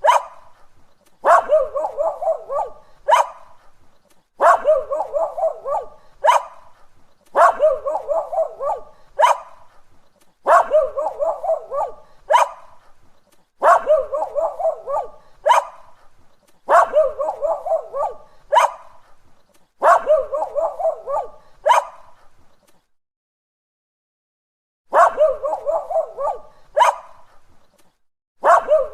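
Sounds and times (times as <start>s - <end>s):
dog barking: 0.0s - 3.8s, 4.4s - 9.8s, 10.4s - 13.0s, 13.6s - 19.2s, 19.8s - 22.3s, 24.9s - 27.4s, 28.4s - 28.9s.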